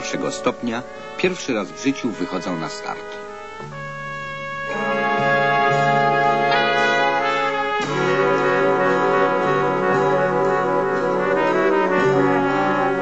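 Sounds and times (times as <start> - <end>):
brass playing sustained chords: 0.0 - 13.0.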